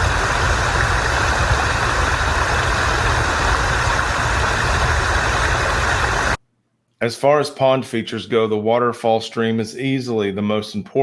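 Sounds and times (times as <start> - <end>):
water rushing down waterfall: 0.0 - 6.4.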